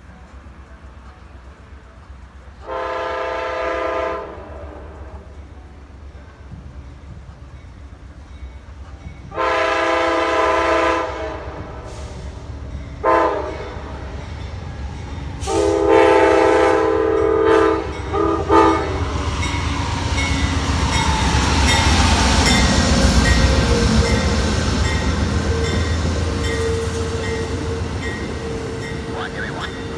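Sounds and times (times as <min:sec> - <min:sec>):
train rumble and wheel noise: 0:00.0 - 0:29.9
locomotive air horn: 0:02.6 - 0:05.2, 0:09.3 - 0:12.3, 0:13.0 - 0:13.9, 0:15.4 - 0:19.2.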